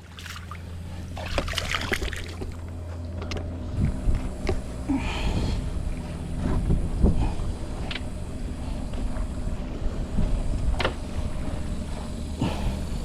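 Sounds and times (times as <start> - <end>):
wind buffeting microphone: 3.5 - 13.0.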